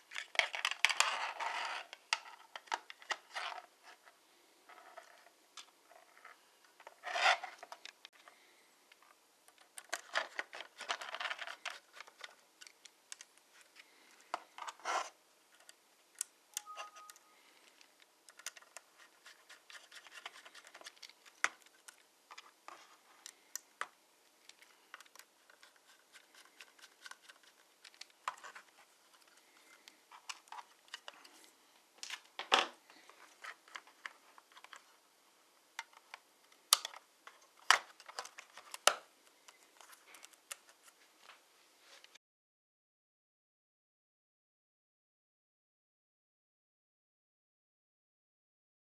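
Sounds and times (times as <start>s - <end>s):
scratchy handling noises: 0.0s - 35.0s, 35.8s - 42.2s
small parts clicking and tapping: 15.5s - 31.2s.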